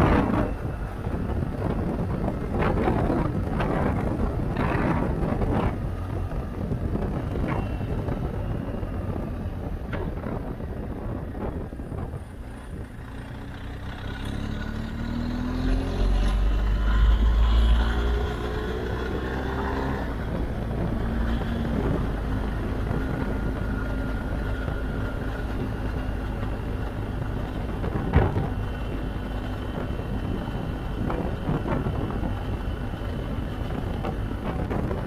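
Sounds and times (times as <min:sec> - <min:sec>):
wind noise on microphone: 0:00.0 - 0:35.0
motorcycle engine running: 0:17.8 - 0:35.0.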